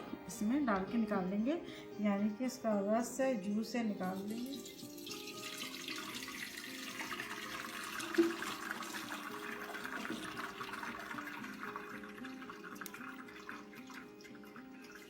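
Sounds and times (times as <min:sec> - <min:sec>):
broth pouring and splashing: 0:04.2 - 0:15.0.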